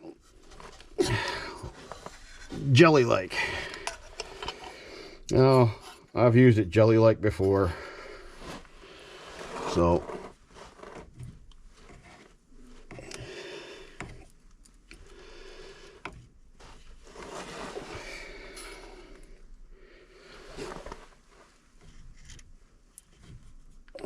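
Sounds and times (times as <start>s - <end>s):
scraping and rubbing sealant: 8.4s - 13.1s.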